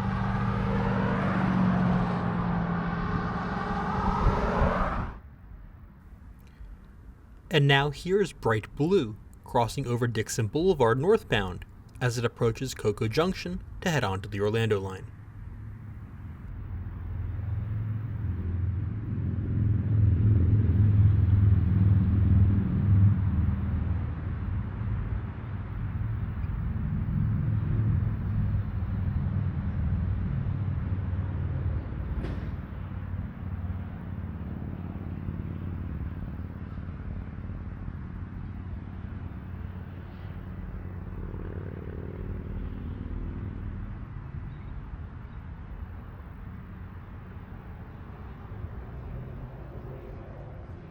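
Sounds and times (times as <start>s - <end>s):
train passing with low rumble: 15.1s - 50.9s.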